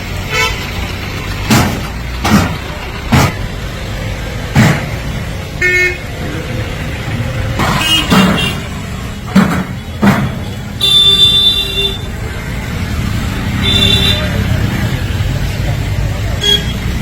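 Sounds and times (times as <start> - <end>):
road traffic: 0.0 - 17.0
vehicle horn honking: 0.3 - 0.6, 5.6 - 6.0, 7.8 - 8.8, 10.8 - 12.1, 13.6 - 14.4, 16.4 - 16.9
sharp knocks: 1.4 - 3.4, 4.5 - 5.1, 7.6 - 10.6.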